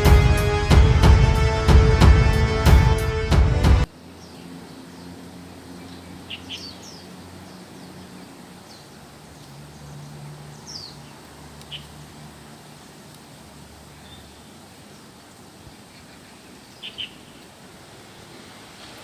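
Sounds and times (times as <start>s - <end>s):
intro music: 0.0s - 3.9s
faint outdoor background: 0.0s - 19.0s
bird chirping: 4.1s - 12.0s, 13.9s - 17.5s.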